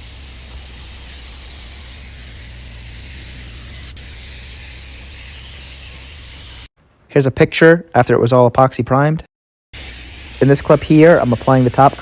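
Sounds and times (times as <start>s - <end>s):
spray gun hissing: 0.0s - 6.7s, 9.8s - 12.0s.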